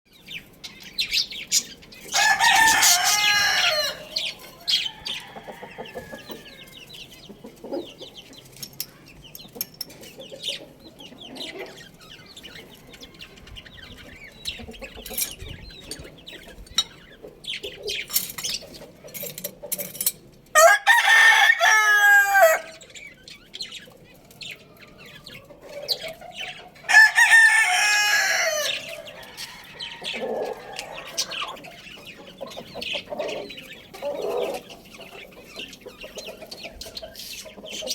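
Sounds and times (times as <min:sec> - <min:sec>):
rooster crowing: 0:02.1 - 0:06.8, 0:20.6 - 0:22.8, 0:26.9 - 0:31.5.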